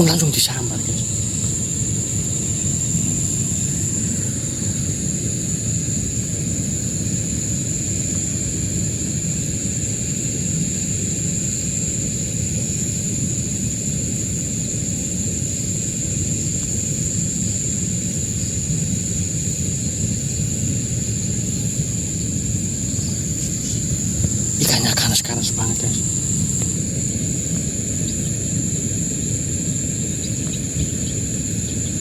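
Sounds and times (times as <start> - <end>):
steady low rumble: 0.0 - 5.3, 22.5 - 31.6
high-pitched insect drone: 0.0 - 32.0.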